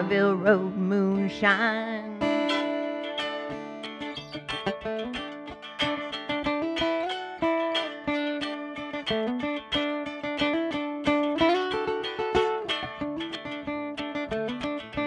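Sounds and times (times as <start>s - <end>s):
person singing country song: 0.0s - 4.8s
picked guitar: 0.0s - 15.0s.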